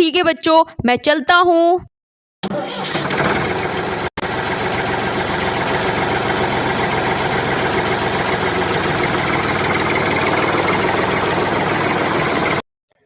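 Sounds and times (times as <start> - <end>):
tractor engine chugging: 2.5 - 12.6.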